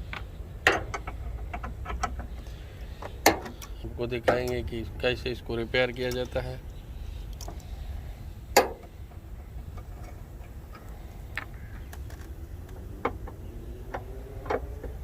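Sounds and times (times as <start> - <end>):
tools clicking and knocking: 0.0 - 2.4, 3.0 - 4.6
steady low hum: 0.0 - 15.0.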